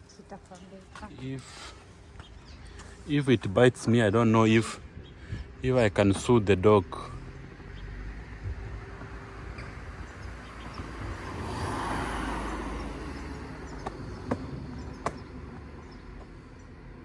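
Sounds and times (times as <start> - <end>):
car passing by: 7.0 - 15.8.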